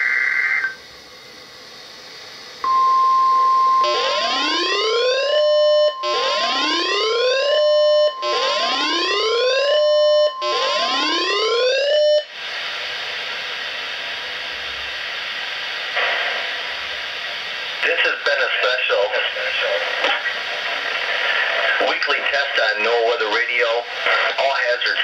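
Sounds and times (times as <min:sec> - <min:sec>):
radio hiss: 0:00.0 - 0:02.6, 0:12.3 - 0:25.0
steady warning alarm tone: 0:02.6 - 0:12.4
rising siren wails: 0:02.7 - 0:12.2.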